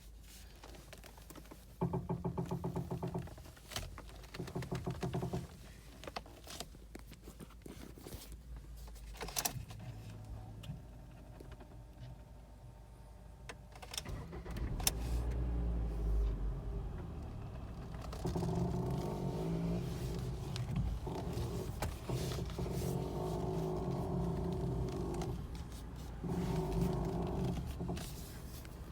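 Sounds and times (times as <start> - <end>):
steering rack creaking: 0.6 - 6.7, 17.0 - 28.9.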